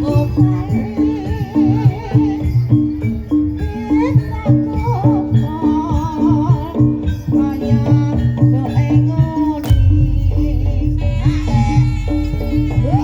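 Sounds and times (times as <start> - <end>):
pitched percussion pattern: 0.0 - 13.0
sharp knock: 9.6 - 12.9
low boom: 9.6 - 13.0
wavering melody line: 9.6 - 13.0.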